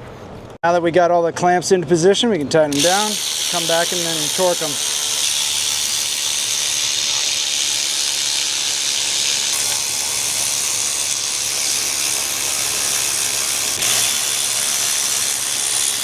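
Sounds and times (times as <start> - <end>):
steady hiss: 2.8 - 16.0.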